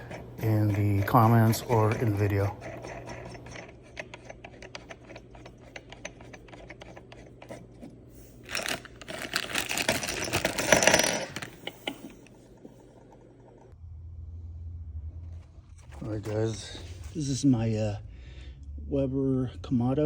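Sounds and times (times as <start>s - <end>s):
small metal parts clattering: 8.4s - 12.2s.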